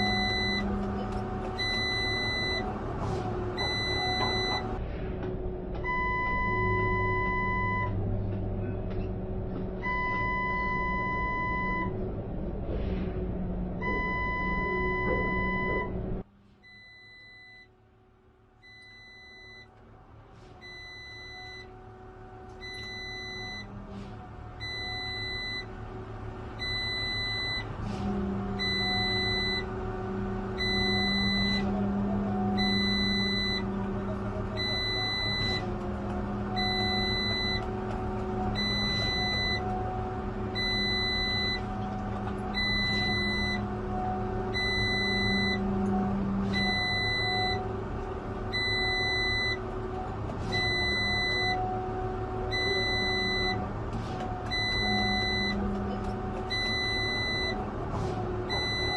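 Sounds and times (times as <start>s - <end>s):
vehicle backup alarm beeping: 0.0s - 0.8s, 1.6s - 2.7s, 3.6s - 4.8s, 5.9s - 8.0s, 9.8s - 11.9s, 13.8s - 16.0s, 16.6s - 17.7s, 18.6s - 19.7s, 20.6s - 21.8s, 22.6s - 23.7s, 24.6s - 25.7s, 26.6s - 27.7s, 28.6s - 29.8s, 30.6s - 31.8s, 32.4s - 33.8s, 34.5s - 35.8s, 36.4s - 37.9s, 38.5s - 39.9s, 40.5s - 47.7s, 48.5s - 49.7s, 50.5s - 53.6s, 54.4s - 57.6s, 58.5s - 58.9s.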